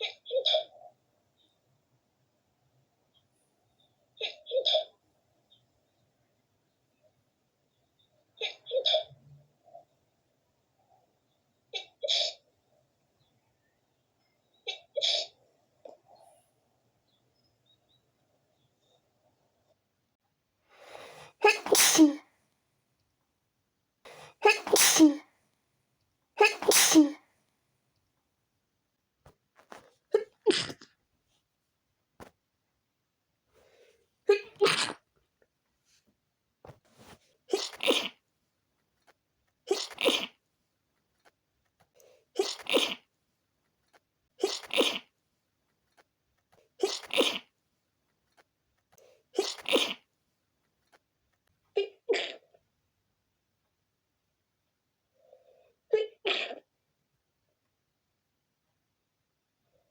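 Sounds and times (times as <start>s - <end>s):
short breath in: 20.7s - 22.2s
woman sneezing loudly: 21.3s - 22.3s, 24.1s - 25.3s, 26.4s - 27.2s, 37.5s - 38.2s, 39.7s - 40.3s, 42.4s - 43.0s, 44.4s - 45.0s.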